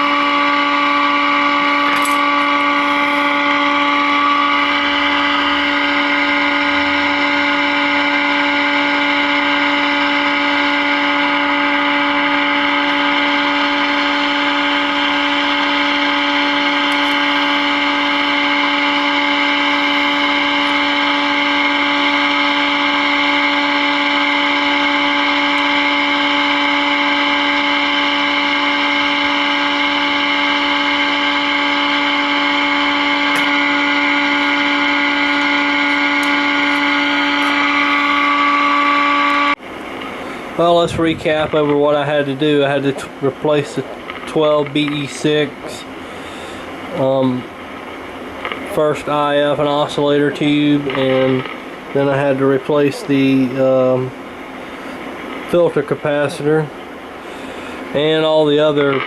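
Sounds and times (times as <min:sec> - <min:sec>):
buzzing test tone from radio: 0:00.0 - 0:59.0.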